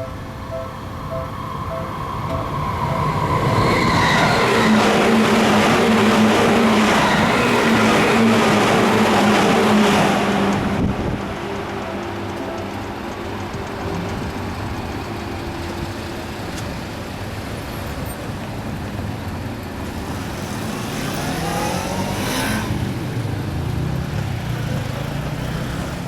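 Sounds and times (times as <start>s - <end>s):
traffic noise: 0.0s - 26.0s.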